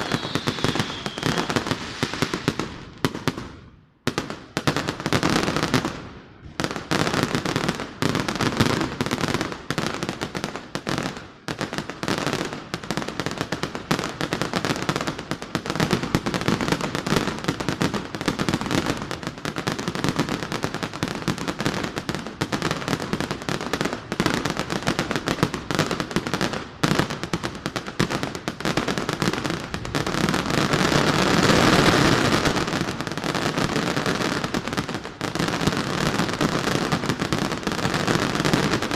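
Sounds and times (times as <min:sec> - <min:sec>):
fireworks bangs and crackles: 0:00.0 - 0:38.9.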